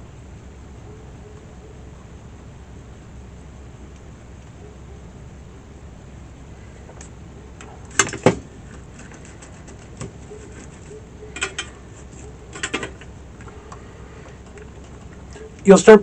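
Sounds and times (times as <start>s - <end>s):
faint steady hiss: 0.0s - 16.0s.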